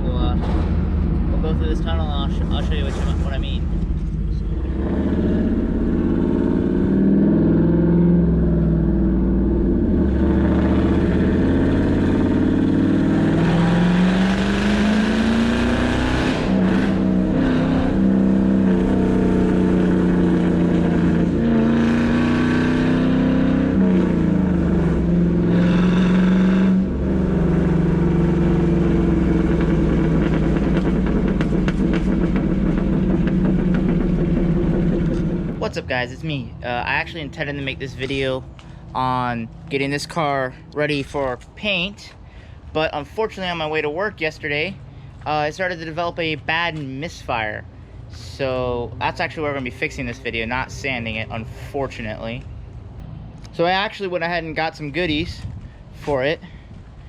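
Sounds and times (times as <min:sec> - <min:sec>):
car engine misfiring accelerating: 0:00.1 - 0:35.8.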